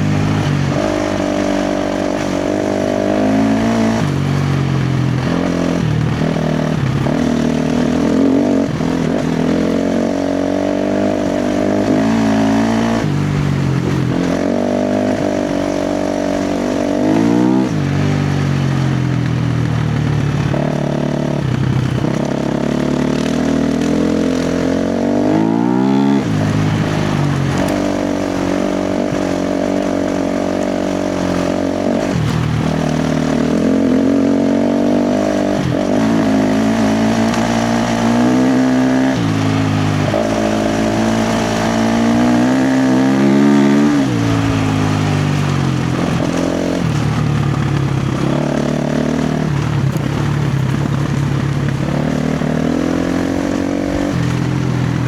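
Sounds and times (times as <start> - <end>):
motorcycle engine revving hard: 0.0 - 55.0.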